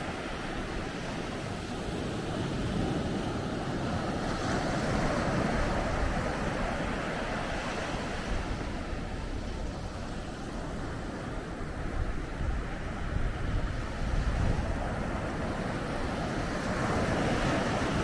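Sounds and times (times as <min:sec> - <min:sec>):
low wind rumble on microphone: 0:00.0 - 0:18.0
ocean waves breaking: 0:14.6 - 0:18.0.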